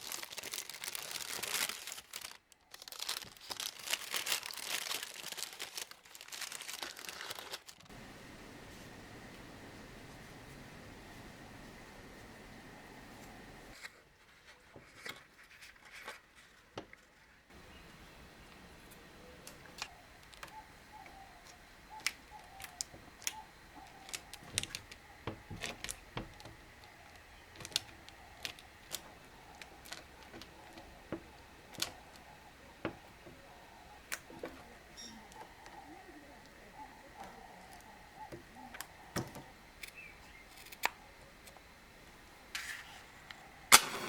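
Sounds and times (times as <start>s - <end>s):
bird calls: 17.5s - 41.3s.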